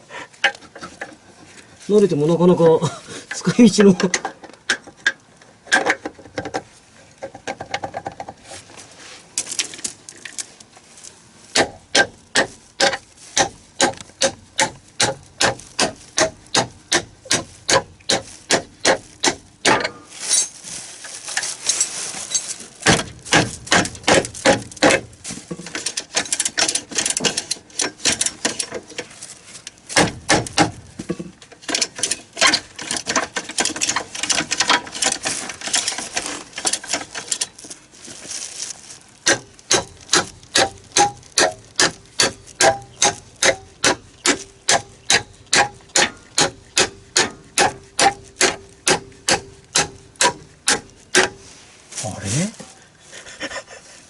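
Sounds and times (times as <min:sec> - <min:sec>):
metallic clicks of hand tools: 0:25.7 - 0:28.8.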